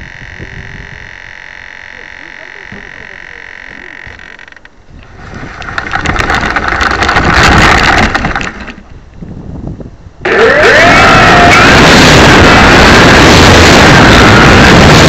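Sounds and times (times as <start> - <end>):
model aircraft engine: 0.0 - 4.4, 10.2 - 15.0.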